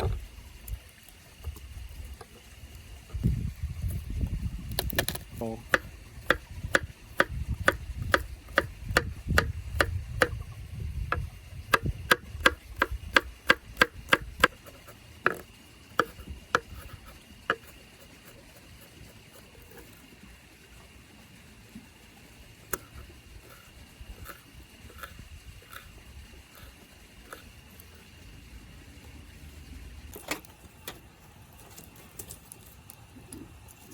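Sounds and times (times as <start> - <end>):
knife chopping on cutting board: 4.8 - 10.4, 11.1 - 14.7, 16.0 - 17.8.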